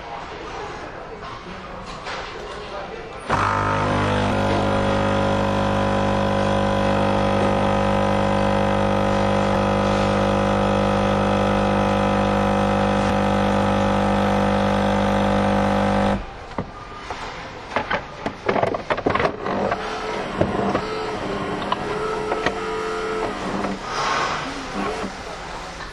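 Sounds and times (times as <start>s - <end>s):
coffee machine humming: 3.3s - 16.6s, 19.3s - 24.0s, 24.6s - 25.1s.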